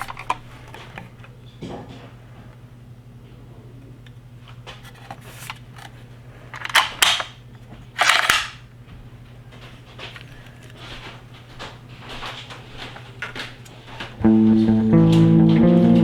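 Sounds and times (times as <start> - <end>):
low steady hum: 14.2 - 16.0.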